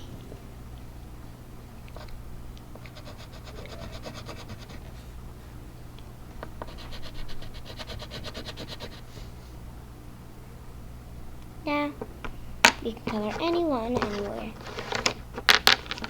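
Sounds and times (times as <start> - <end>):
scribbling on paper: 2.8 - 5.0, 6.6 - 9.2.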